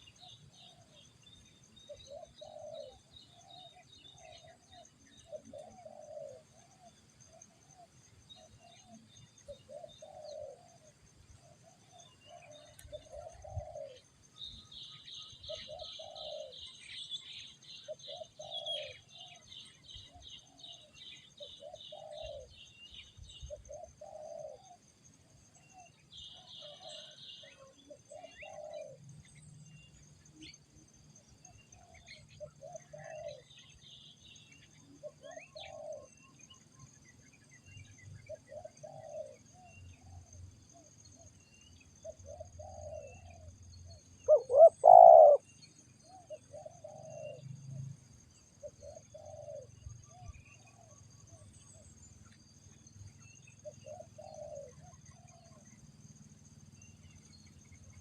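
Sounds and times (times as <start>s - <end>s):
dove cooing: 1.8s - 14.0s, 14.7s - 22.8s, 23.5s - 24.8s, 25.6s - 29.1s, 31.8s - 34.0s, 35.0s - 36.3s, 38.2s - 40.9s, 42.0s - 43.6s, 44.2s - 47.6s, 48.6s - 51.0s, 53.6s - 55.6s.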